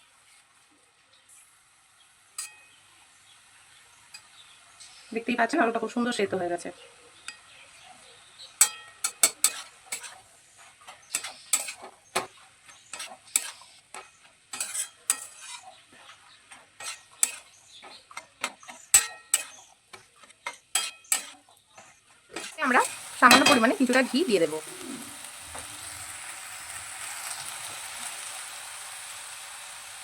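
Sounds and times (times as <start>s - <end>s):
faint sizzle: 0.0s - 30.0s
metal utensil scraping a pan: 2.3s - 2.8s, 4.1s - 5.0s, 8.4s - 26.0s.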